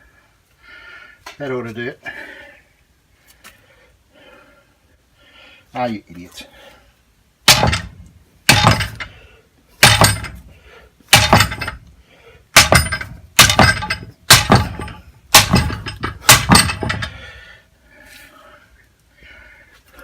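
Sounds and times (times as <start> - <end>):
hammer striking steel lever: 7.5 - 7.9, 8.5 - 9.1, 9.8 - 10.4, 11.1 - 11.8, 12.6 - 17.2.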